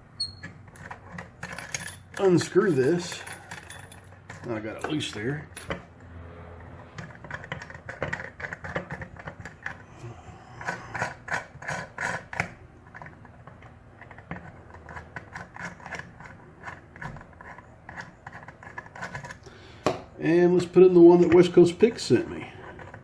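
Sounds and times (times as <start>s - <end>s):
small metal clicks and rattles: 0.6s - 5.9s.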